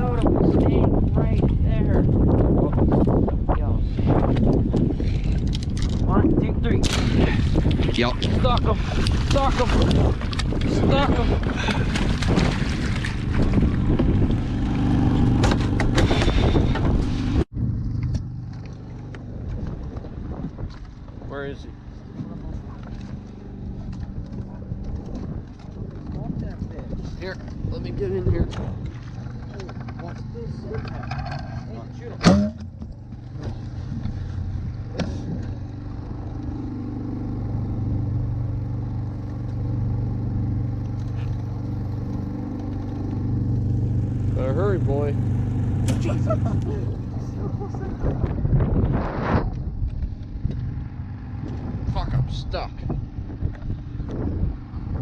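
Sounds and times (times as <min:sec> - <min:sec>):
wind buffeting microphone: 0:00.0 - 0:18.3, 0:19.0 - 0:55.0
motor running: 0:00.0 - 0:55.0
small engine humming: 0:32.7 - 0:52.1.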